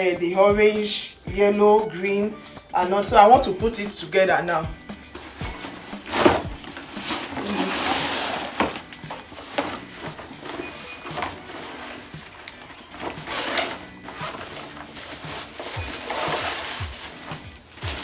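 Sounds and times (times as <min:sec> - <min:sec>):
packaging rustling: 0:05.2 - 0:18.0.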